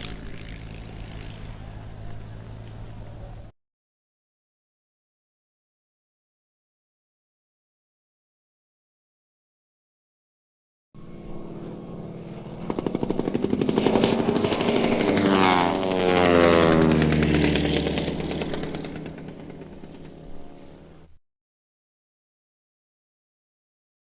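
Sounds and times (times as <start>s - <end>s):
vehicle engine passing by: 0.0s - 3.5s, 11.0s - 21.2s.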